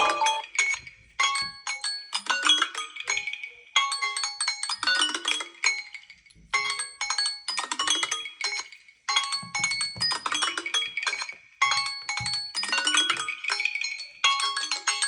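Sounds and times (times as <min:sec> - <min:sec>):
marimba-like phone alarm chime: 0:00.0 - 0:00.4.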